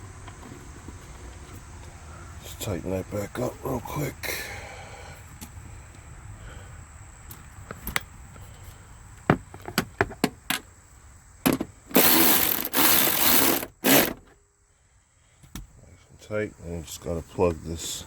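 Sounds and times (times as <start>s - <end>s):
power tool bursts: 11.9s - 14.2s.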